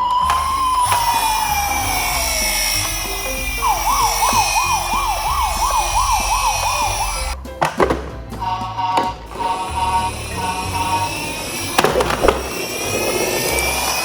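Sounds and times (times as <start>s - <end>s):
fast warbling siren: 0.0s - 7.4s, 8.6s - 14.0s
siren rising and falling: 0.0s - 7.4s, 8.9s - 14.0s
background music with bass: 0.0s - 14.0s
sharp knocks: 7.5s - 8.4s.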